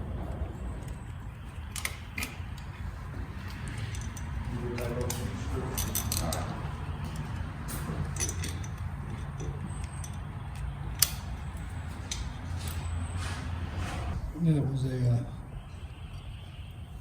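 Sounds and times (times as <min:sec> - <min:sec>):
metal snap ring scraping: 0:01.7 - 0:14.2.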